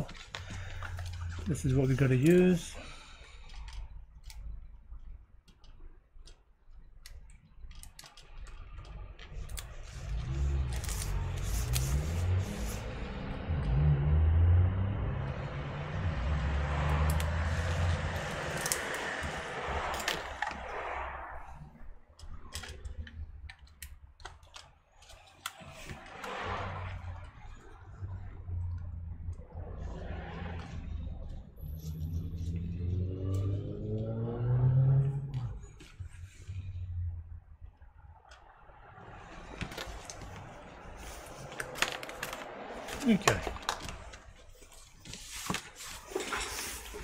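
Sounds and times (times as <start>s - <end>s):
small parts clicking and knocking: 3.2s - 11.8s, 22.2s - 26.2s
tape being pulled off: 9.6s - 13.0s.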